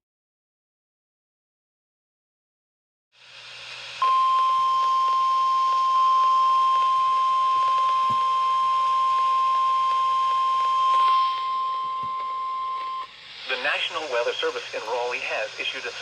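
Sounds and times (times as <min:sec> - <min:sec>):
radio hiss: 0:03.2 - 0:16.0
loud steady high alarm tone: 0:04.0 - 0:16.0.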